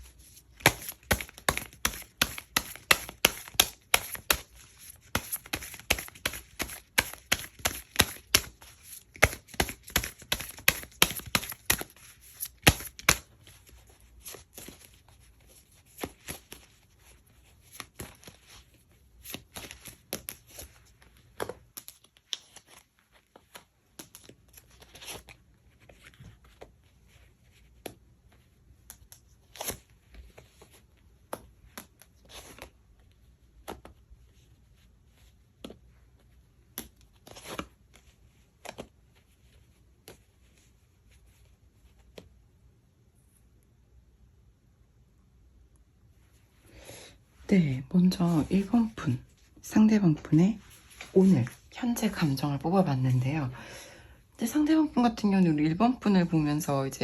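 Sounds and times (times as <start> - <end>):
cards tapping and sliding: 0.0 - 14.9
cards snapping and flicking: 0.5 - 13.3.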